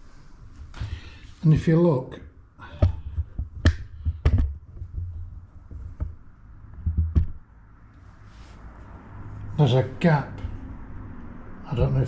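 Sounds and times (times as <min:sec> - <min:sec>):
sharp knocks and taps: 0:02.7 - 0:07.5
low rumble of handling: 0:02.8 - 0:09.2.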